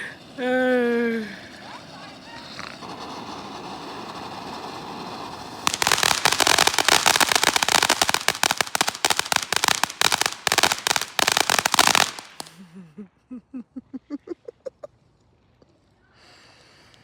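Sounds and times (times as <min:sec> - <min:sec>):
low hiss: 0:00.0 - 0:17.0
firecrackers popping: 0:01.0 - 0:12.8.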